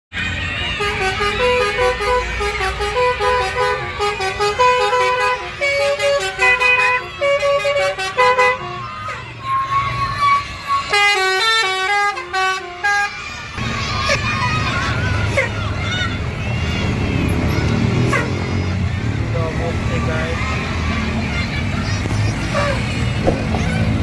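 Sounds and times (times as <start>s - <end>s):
bus horn playing melody: 0.6s - 13.2s.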